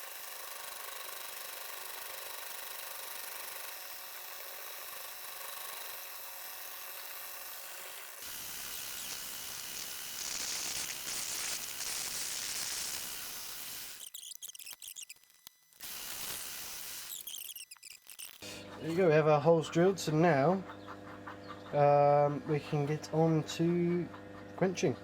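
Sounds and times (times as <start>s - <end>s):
electric drill whining: 0.0s - 18.4s.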